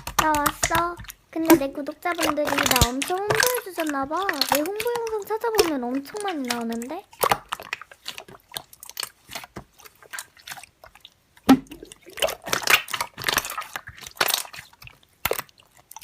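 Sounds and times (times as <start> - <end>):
slime squishing by hand: 0.0 - 16.0.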